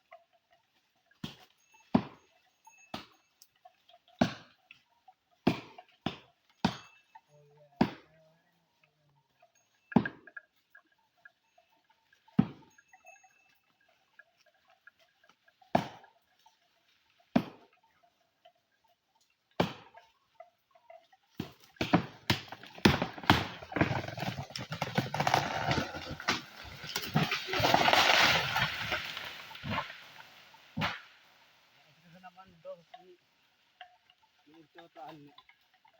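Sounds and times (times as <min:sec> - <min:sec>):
branches and leaves crackling: 0:20.4 - 0:35.9
axe chopping into tree: 0:21.8 - 0:23.9.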